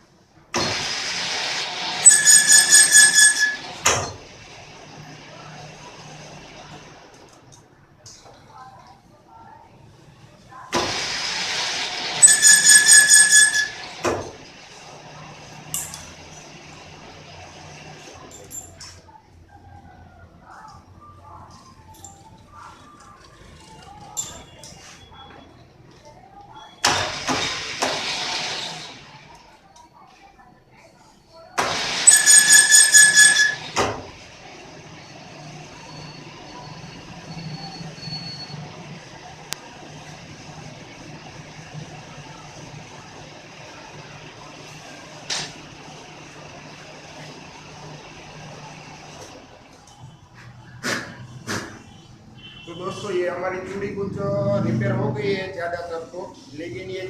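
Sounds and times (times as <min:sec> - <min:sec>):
metal squeal on a lathe: 0:01.4 - 0:04.2, 0:11.4 - 0:14.2, 0:31.8 - 0:33.8, 0:34.8 - 0:38.7
high-pitched ringing cut: 0:02.0 - 0:03.8, 0:12.1 - 0:14.0, 0:32.0 - 0:33.7.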